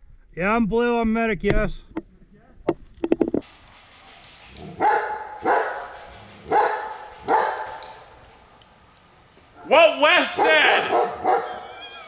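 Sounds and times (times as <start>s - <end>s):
dog barking: 4.5s - 8.5s, 9.5s - 12.0s.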